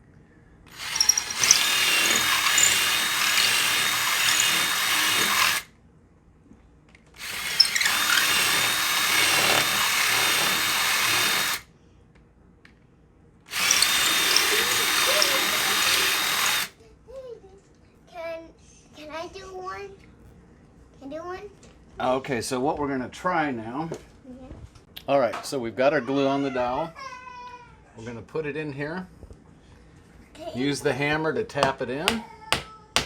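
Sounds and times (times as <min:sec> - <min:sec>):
electric drill whining: 0:00.7 - 0:05.7, 0:07.2 - 0:11.6, 0:13.5 - 0:16.7.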